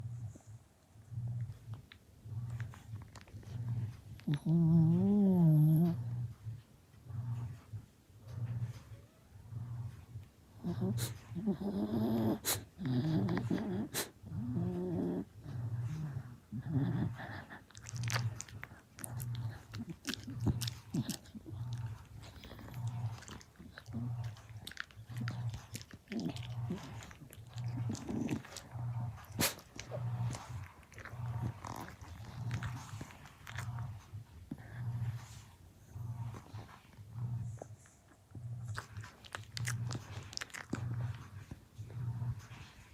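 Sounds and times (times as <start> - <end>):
dog crunching a treat: 17.6 - 33.9, 38.6 - 42.7.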